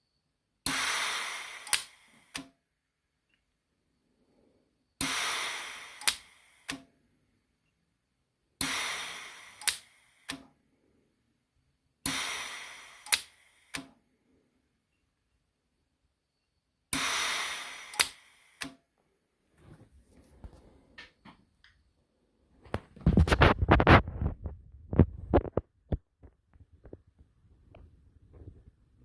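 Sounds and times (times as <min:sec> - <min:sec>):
welder hiss: 0:00.7 - 0:02.4, 0:05.0 - 0:06.8, 0:08.6 - 0:10.4, 0:12.1 - 0:13.9, 0:16.9 - 0:18.7
sharp clicks: 0:01.6 - 0:02.5, 0:06.0 - 0:06.9, 0:09.6 - 0:10.5, 0:13.0 - 0:13.9, 0:17.9 - 0:18.8.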